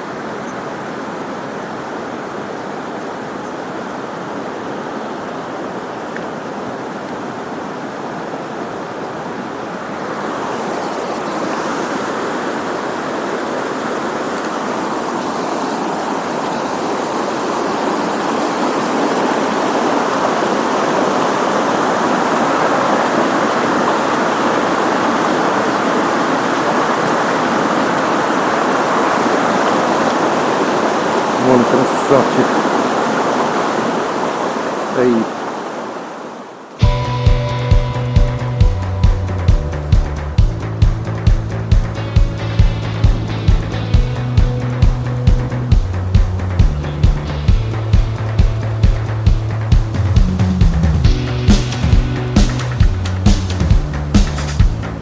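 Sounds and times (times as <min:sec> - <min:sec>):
water rushing over stones: 0:00.0 - 0:36.9.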